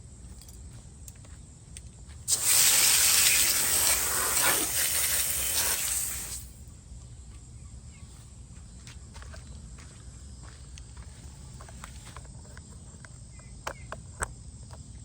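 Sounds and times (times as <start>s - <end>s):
hose nozzle spraying water: 2.3s - 6.6s.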